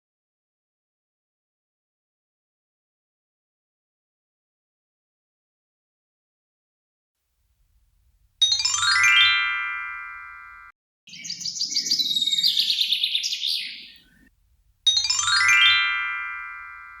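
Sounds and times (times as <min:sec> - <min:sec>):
sparkling chime sweep: 0:08.5 - 0:10.7, 0:14.9 - 0:17.0
rapid bird-like twittering: 0:11.1 - 0:14.3.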